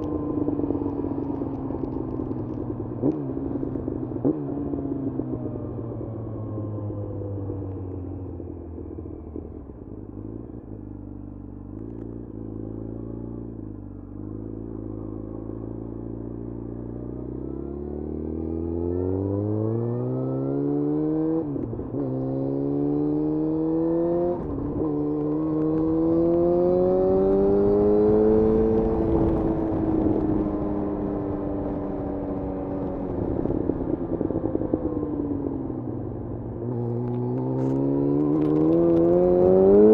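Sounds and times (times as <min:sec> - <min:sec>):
motorcycle engine revving: 0:11.8 - 0:39.9.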